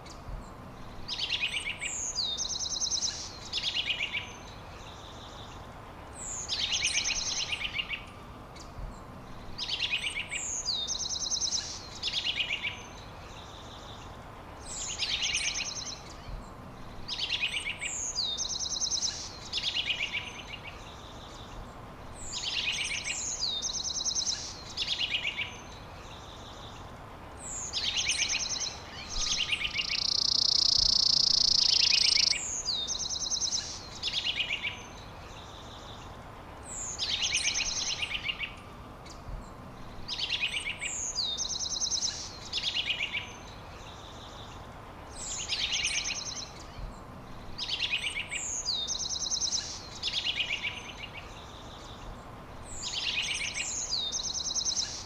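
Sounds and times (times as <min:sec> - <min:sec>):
songbird singing trilled phrase: 0:27.6 - 0:35.8, 0:45.2 - 0:51.8.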